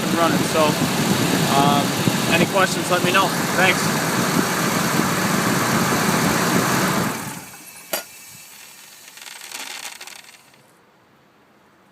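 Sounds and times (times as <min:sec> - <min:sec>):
truck engine idling: 0:00.0 - 0:07.7.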